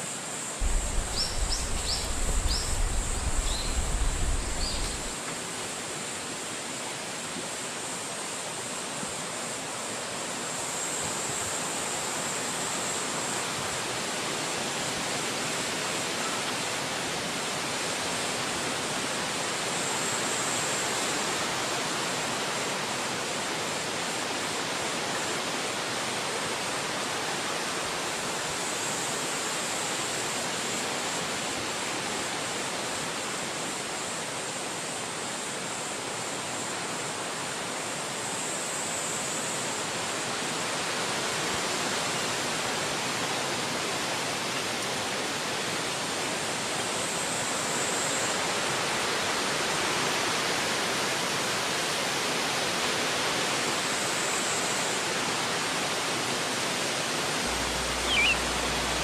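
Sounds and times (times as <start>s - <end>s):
forest ambience rushing noise: 0.0s - 59.0s
low rumble: 0.6s - 5.2s, 57.5s - 59.0s
short high chirps: 57.5s - 59.0s.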